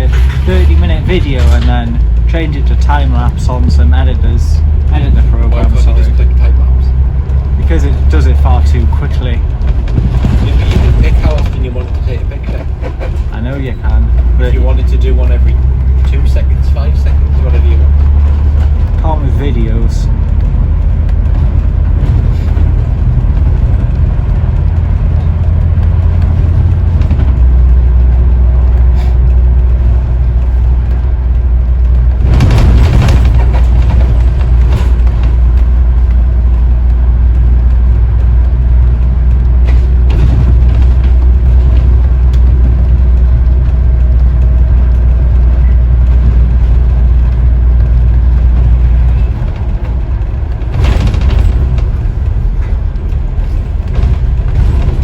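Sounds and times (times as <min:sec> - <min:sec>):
bus diesel engine droning: 0:00.0 - 0:55.0
loud noisy burst: 0:31.6 - 0:55.0.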